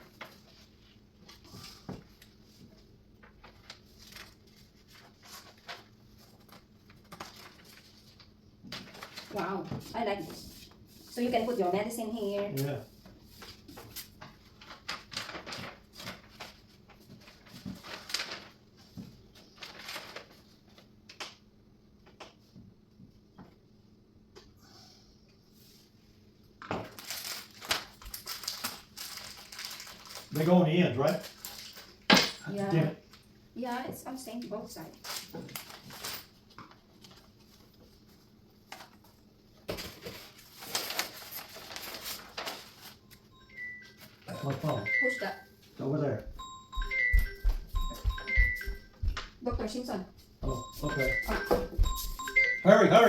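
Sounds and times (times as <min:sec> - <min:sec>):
cabinet parts knocking and clattering: 0:32.0 - 0:32.5.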